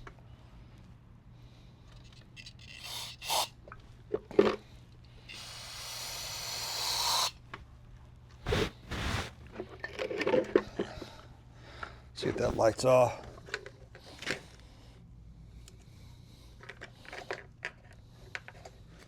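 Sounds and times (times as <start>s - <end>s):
aerosol can spraying: 2.7s - 3.5s, 5.3s - 7.4s, 8.5s - 9.4s.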